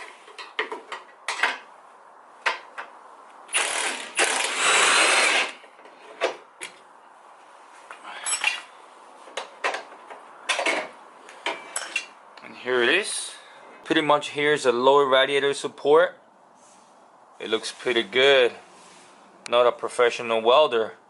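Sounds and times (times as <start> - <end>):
cordless power tool bursts: 3.5 - 5.6
metal clinks and tool knocks: 8.2 - 8.7, 9.3 - 12.2.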